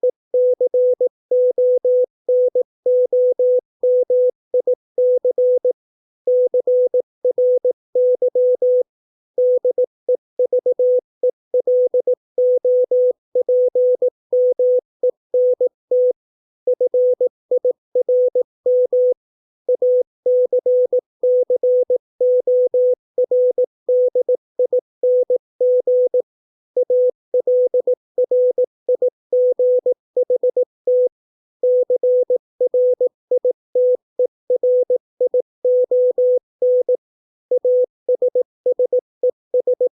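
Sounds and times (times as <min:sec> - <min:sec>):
morse code beeps: 0:26.8 - 0:39.9.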